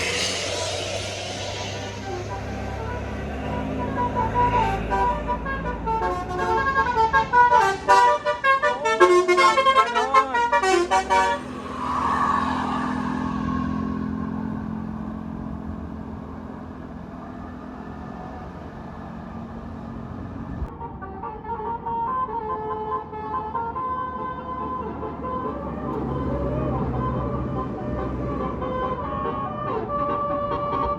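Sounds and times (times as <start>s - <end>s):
short hiss: 0.0s - 3.1s
multi-tone bus horn tune: 0.0s - 13.2s, 20.6s - 30.9s
bus engine running: 0.0s - 30.9s.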